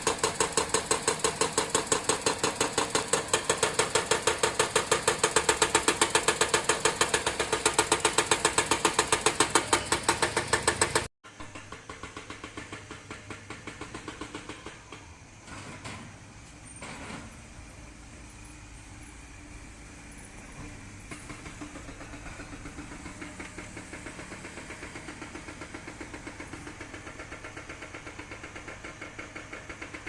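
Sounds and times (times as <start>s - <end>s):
machine engine knocking beat: 0.0s - 15.2s, 21.2s - 30.0s.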